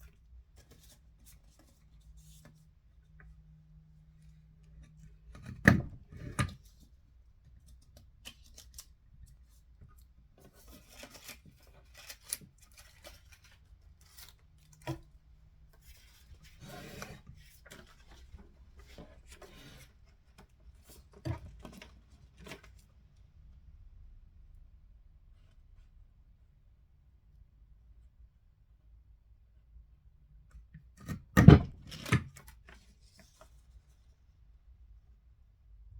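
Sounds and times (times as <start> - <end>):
scraping and rustling: 15.8 - 22.9.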